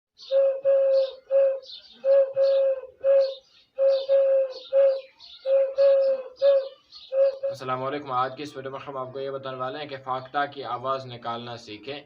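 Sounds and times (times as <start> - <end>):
dove cooing: 0.2 - 8.5
small birds chirping: 0.2 - 12.0.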